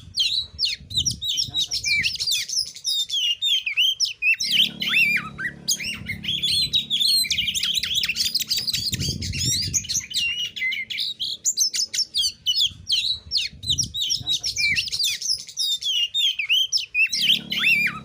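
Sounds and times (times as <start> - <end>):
magpie-robin singing: 0.0 - 18.0
low hum: 4.4 - 10.9, 17.1 - 18.0.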